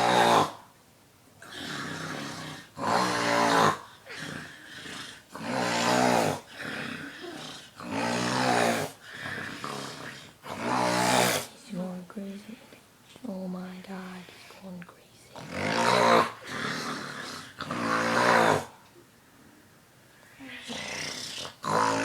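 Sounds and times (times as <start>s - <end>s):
boy snoring loudly: 0.0s - 0.6s, 1.4s - 11.6s, 15.4s - 18.8s, 20.4s - 22.0s
soft breathing: 13.8s - 15.4s.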